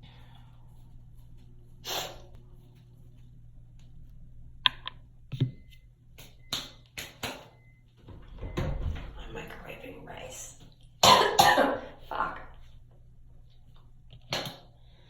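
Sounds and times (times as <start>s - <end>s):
person sniffing: 1.8s - 2.3s.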